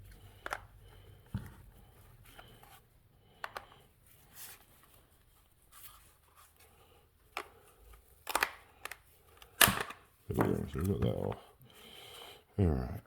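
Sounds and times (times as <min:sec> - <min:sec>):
plastic parts clicking: 0:08.2 - 0:10.1.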